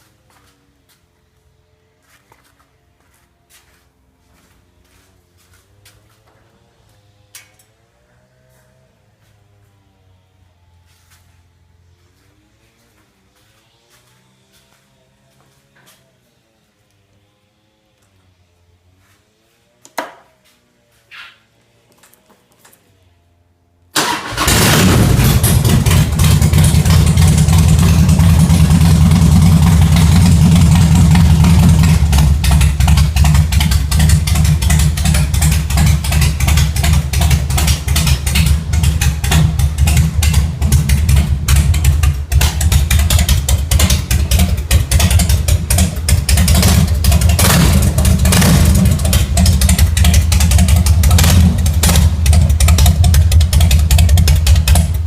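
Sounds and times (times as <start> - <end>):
motorcycle engine loping idle: 24.4 - 55.0.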